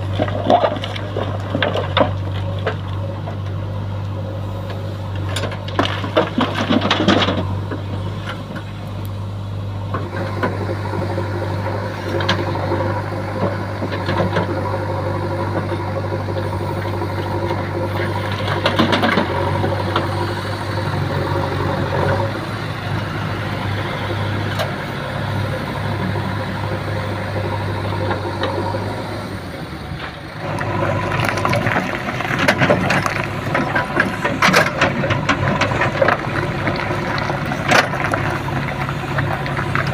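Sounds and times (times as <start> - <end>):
backhoe diesel engine running: 0.0 - 39.9.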